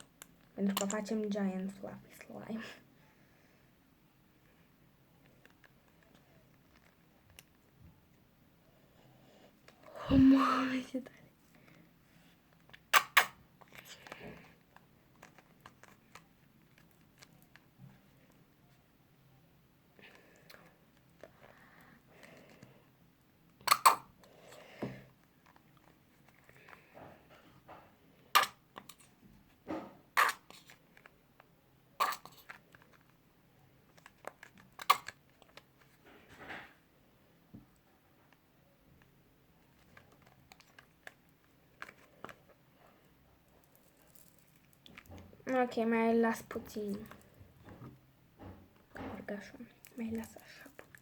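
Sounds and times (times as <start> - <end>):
glue squelching from squeezed bottle: 12.6 - 14.2, 23.6 - 24.3, 30.1 - 30.9.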